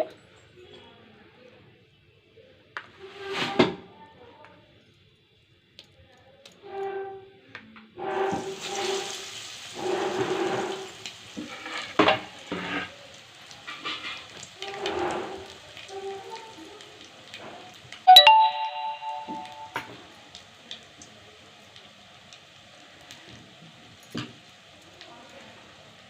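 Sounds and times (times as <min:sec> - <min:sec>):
batter frying in hot oil: 0:00.0 - 0:18.1, 0:19.8 - 0:26.0.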